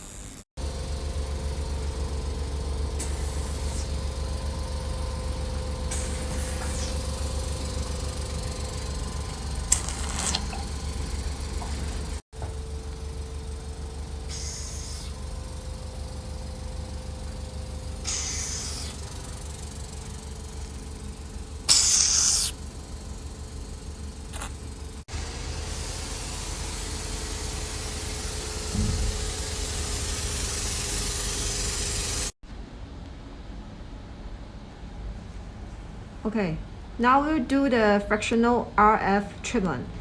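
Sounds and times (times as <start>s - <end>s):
machine humming: 0.0s - 32.4s
spray hissing: 2.9s - 4.6s, 5.7s - 12.2s, 14.2s - 23.5s, 24.2s - 32.4s.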